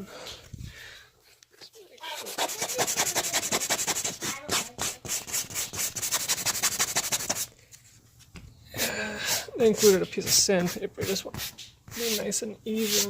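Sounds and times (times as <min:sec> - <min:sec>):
sandpaper rubbing on leather: 0:02.1 - 0:07.5, 0:09.6 - 0:13.0.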